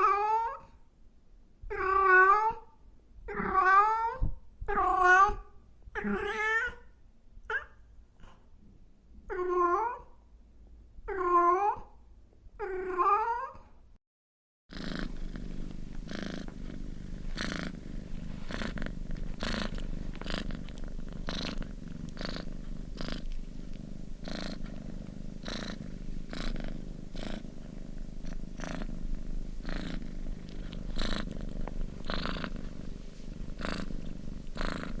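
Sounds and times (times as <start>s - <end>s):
cat purring: 14.7s - 35.0s.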